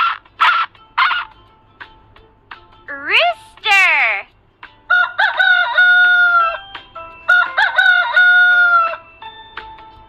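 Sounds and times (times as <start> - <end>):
rooster crowing: 4.9 - 6.6, 7.3 - 9.0.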